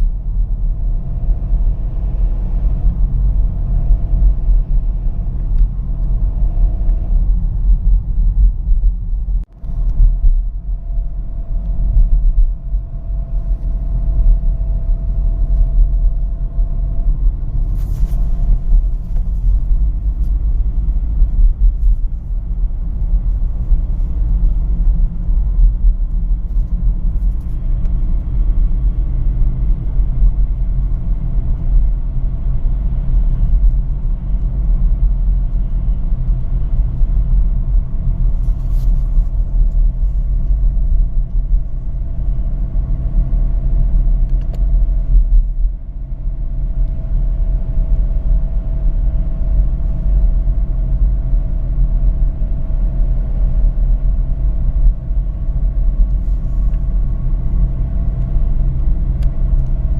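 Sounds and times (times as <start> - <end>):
car engine low rumble: 0.0 - 59.9.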